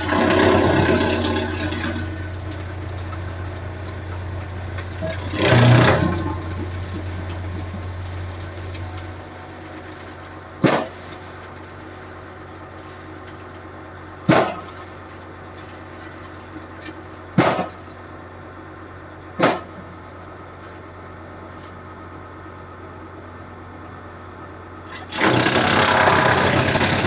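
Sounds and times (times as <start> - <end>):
low machine hum: 0.0 - 27.0
loud sharp knocks: 14.3 - 14.6, 17.4 - 17.7, 19.4 - 19.8.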